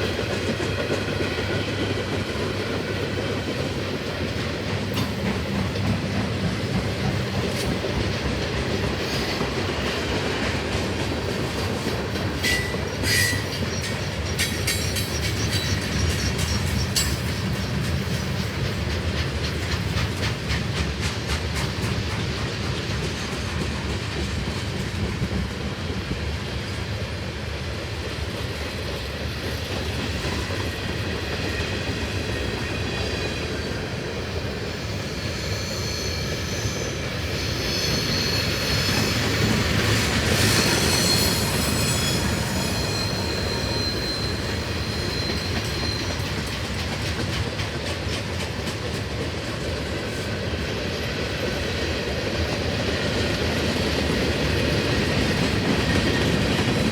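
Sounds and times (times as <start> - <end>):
wheels clacking over rails: 0.0 - 25.7, 38.5 - 56.9
freight train rumbling: 0.0 - 56.9
high-pitched wheel squeal: 12.4 - 17.2, 34.8 - 46.4.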